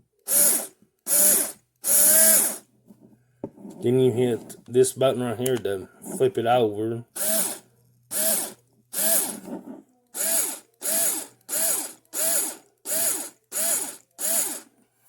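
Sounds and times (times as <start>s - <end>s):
cordless screwdriver motor whirring: 0.3s - 2.6s, 7.2s - 9.5s, 10.1s - 14.7s.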